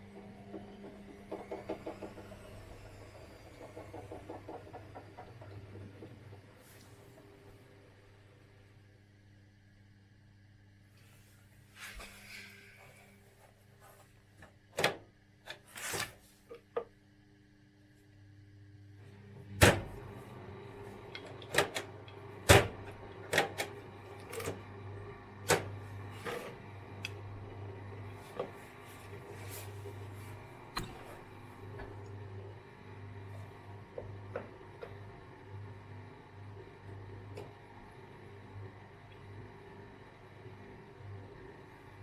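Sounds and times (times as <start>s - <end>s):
washing machine motor hum: 0.0s - 42.0s.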